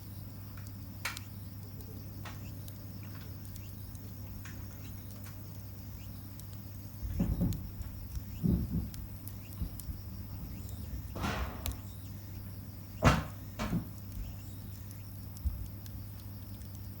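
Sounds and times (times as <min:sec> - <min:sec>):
bonfire crackling: 0:00.3 - 0:17.0
knocks and rustles: 0:07.0 - 0:12.2, 0:13.0 - 0:14.3.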